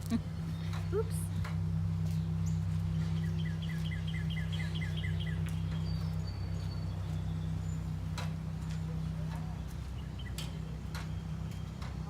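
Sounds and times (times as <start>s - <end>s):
bird chirping: 0.4s - 8.1s.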